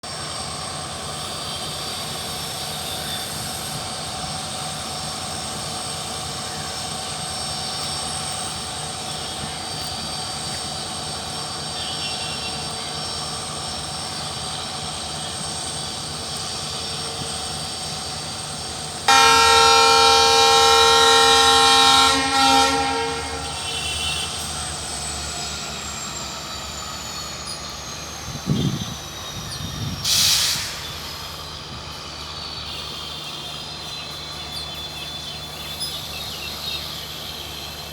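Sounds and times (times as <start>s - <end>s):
locomotive engine hum: 0.0s - 37.9s
locomotive horn: 19.0s - 25.0s, 32.7s - 35.7s
high whine: 19.0s - 30.1s.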